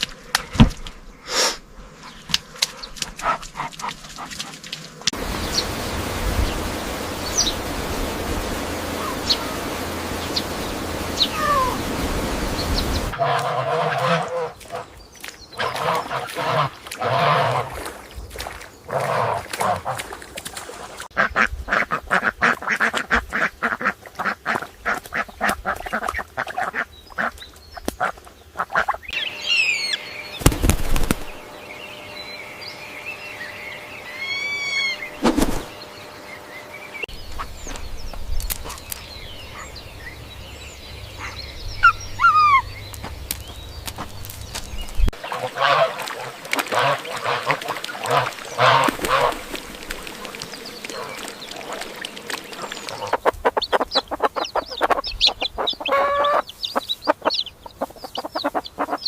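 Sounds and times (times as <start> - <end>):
ducks quacking: 2.6 - 5.8, 7.3 - 15.0, 15.6 - 31.3, 41.1 - 42.7, 45.1 - 59.0
high thin chirping calls: 28.8 - 43.8, 48.3 - 59.0.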